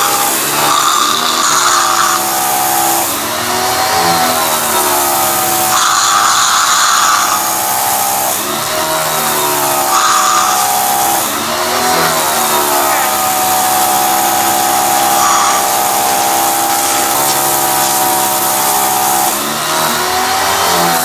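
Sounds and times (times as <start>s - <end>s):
pressure washer motor whine: 0.0s - 21.0s
water jet hissing: 0.0s - 21.0s.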